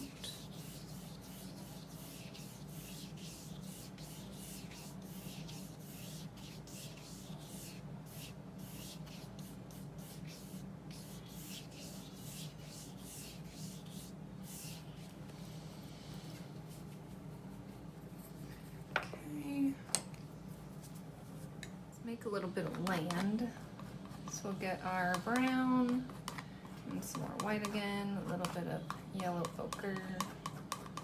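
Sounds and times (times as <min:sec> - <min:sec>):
paintbrush brushing on paper: 0:00.0 - 0:17.9.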